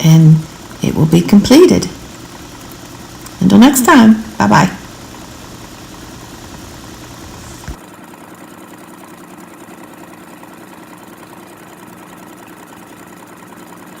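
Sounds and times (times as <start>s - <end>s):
sewing machine running: 0.0s - 7.8s.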